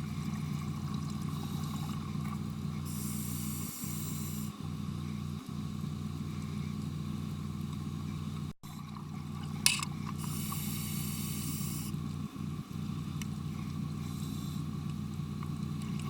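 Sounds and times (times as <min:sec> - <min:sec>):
exhaled bubbles hissing: 0:00.0 - 0:04.6, 0:08.7 - 0:12.0
steady low hum: 0:00.0 - 0:16.0
scuba breathing through regulator: 0:02.9 - 0:04.5, 0:10.2 - 0:11.9.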